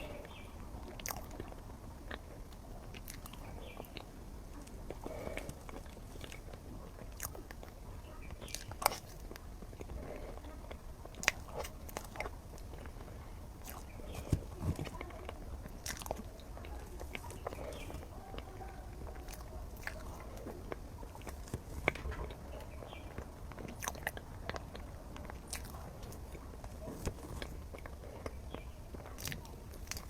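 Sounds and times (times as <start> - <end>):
person biting and chewing: 0.0 - 4.1, 4.8 - 7.8, 8.4 - 18.4, 23.6 - 30.0.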